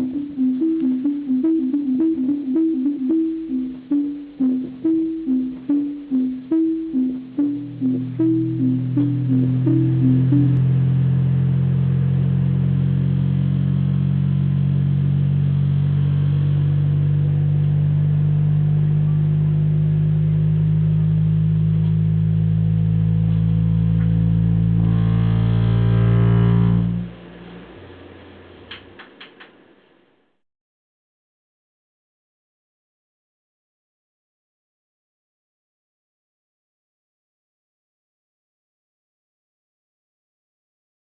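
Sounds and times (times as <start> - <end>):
low droning bass chord: 0.0 - 27.4
faint low hum: 0.0 - 29.0.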